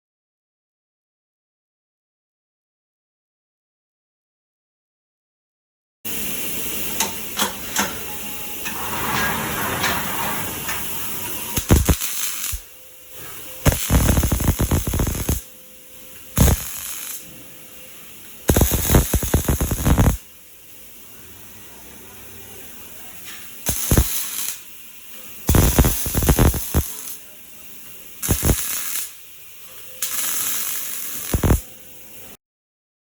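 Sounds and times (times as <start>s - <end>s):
welding arc crackling and hissing: 6.1s - 32.4s.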